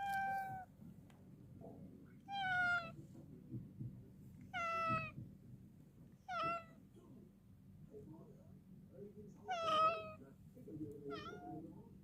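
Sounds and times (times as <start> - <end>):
cat meowing: 0.0 - 0.7, 2.3 - 3.0, 4.5 - 5.2, 6.3 - 6.8, 9.5 - 10.2, 11.1 - 11.6.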